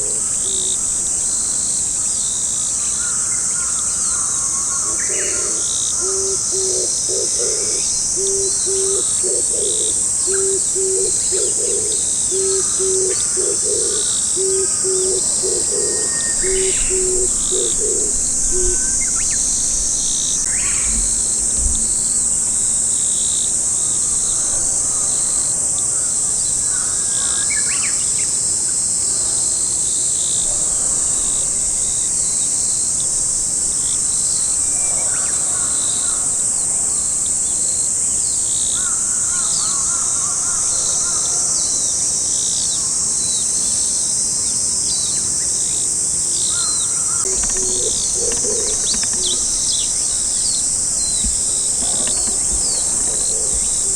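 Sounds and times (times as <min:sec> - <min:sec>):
insects trilling: 0:00.0 - 0:53.9
small birds chirping: 0:46.7 - 0:53.9.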